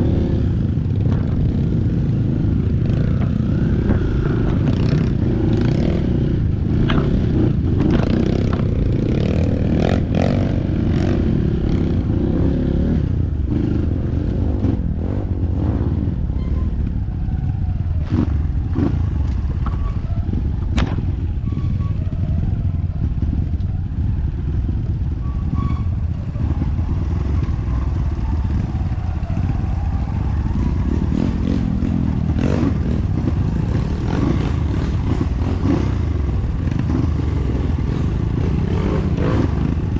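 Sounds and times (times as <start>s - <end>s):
motorcycle engine running at low revs: 0.0s - 39.9s.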